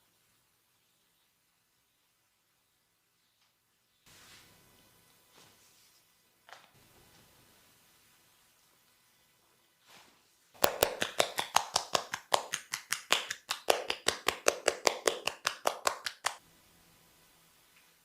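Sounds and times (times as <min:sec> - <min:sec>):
hands slapping body: 0:10.6 - 0:16.4.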